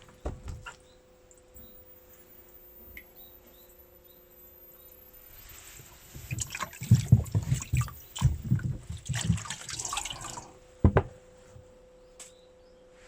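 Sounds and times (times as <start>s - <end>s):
low thuds: 0.0s - 0.8s, 6.2s - 9.5s, 10.8s - 11.4s
water sloshing and splashing: 5.8s - 11.2s.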